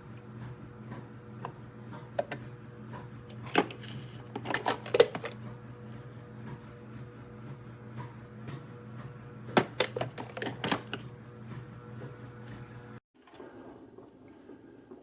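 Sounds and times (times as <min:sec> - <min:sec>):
objects clicking and clattering: 0:03.3 - 0:05.4.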